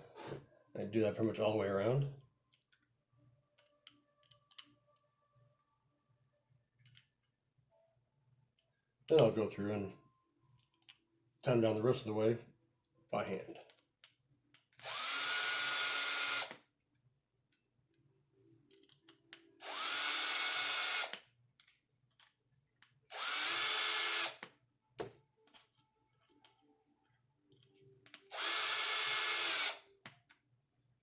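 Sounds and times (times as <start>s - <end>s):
power drill driving screws: 14.8s - 16.6s, 19.6s - 21.2s, 23.1s - 24.4s, 28.3s - 29.8s.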